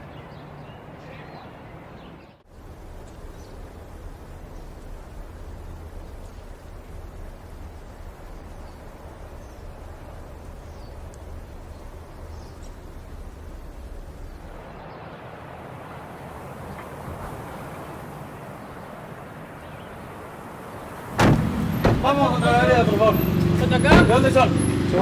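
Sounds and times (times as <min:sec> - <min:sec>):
low rumble of traffic: 0:00.0 - 0:25.0
faint bird chirps: 0:00.1 - 0:15.1
even rushing noise: 0:02.5 - 0:25.0.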